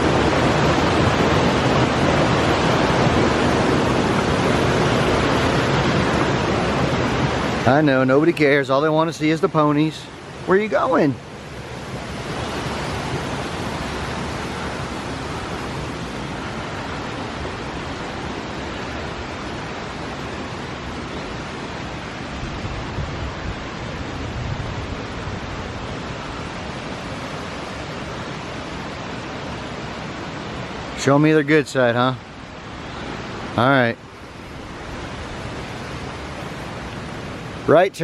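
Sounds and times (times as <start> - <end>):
rushing stream water: 0.0 - 38.0.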